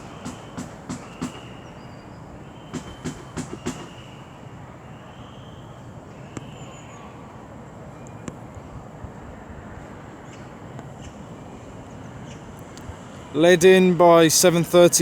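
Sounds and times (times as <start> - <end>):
train rolling rumble: 0.0 - 4.3
train wheels clicking over track: 0.0 - 4.3.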